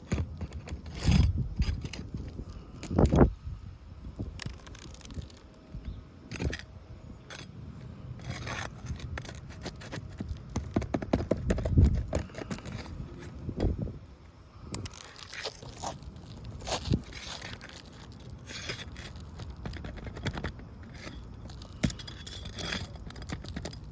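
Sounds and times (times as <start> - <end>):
roof shingle scraping and tearing: 0.0 - 3.3, 4.4 - 5.6, 8.2 - 13.8, 14.9 - 23.9.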